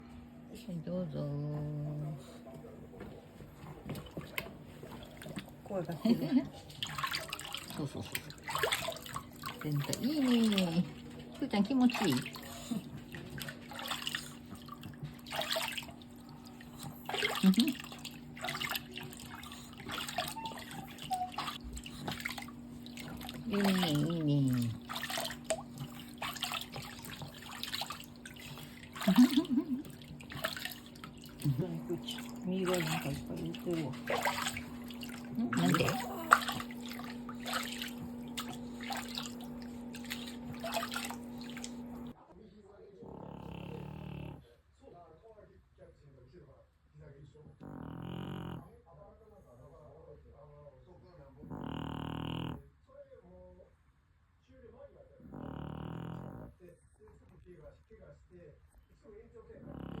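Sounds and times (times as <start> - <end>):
steady low hum: 0.0 - 42.2
bath water splashing and pouring: 3.8 - 42.2.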